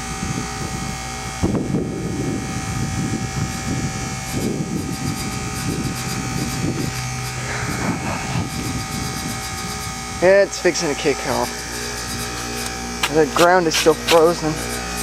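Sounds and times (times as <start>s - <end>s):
fan grill buzzing: 0.0s - 15.0s
wind rumbling on microphone: 0.1s - 10.5s
heat pump compressor hum: 1.0s - 15.0s.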